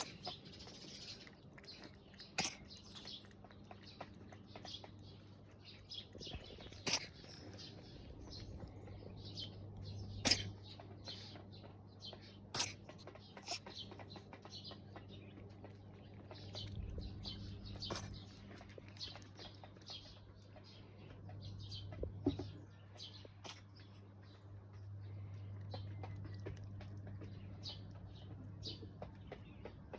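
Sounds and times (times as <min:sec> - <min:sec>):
steady low hum: 0:00.0 - 0:29.9
kitten sneezing: 0:02.3 - 0:02.8, 0:06.7 - 0:07.5, 0:10.2 - 0:10.6, 0:12.5 - 0:12.8, 0:17.9 - 0:18.2, 0:23.4 - 0:23.7.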